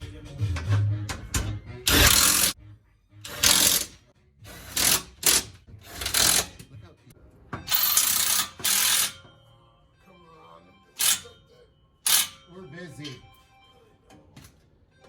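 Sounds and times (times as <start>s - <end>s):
pneumatic hand tool hissing: 1.9s - 2.6s, 3.3s - 3.9s, 4.5s - 6.5s, 12.1s - 12.4s.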